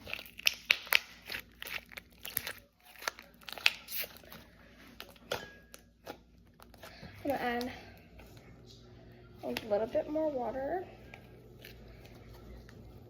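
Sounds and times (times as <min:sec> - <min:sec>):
slime squished by hand: 0:00.0 - 0:04.4.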